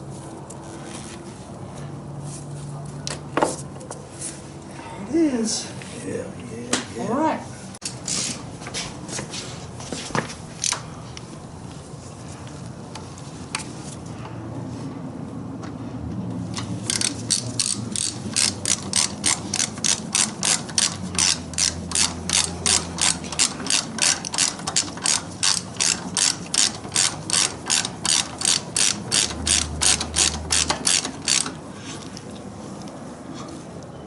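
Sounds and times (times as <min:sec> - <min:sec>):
ratchet wrench clicking: 0:10.6 - 0:10.8, 0:16.6 - 0:31.6.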